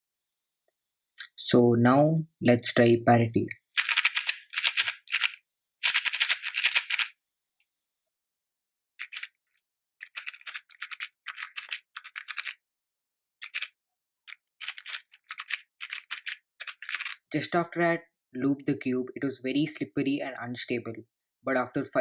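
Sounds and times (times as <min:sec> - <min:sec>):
speed cube plastic clicking: 0:03.8 - 0:07.1, 0:09.0 - 0:09.4, 0:10.0 - 0:12.6, 0:13.4 - 0:13.7, 0:14.3 - 0:17.3.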